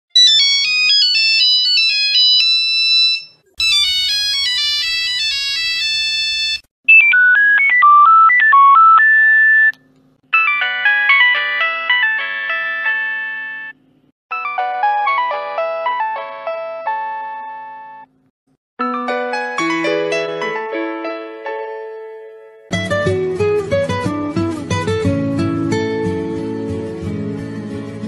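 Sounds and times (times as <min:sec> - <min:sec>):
mobile phone ringtone melodies: 0:00.2 - 0:09.7, 0:10.3 - 0:18.1.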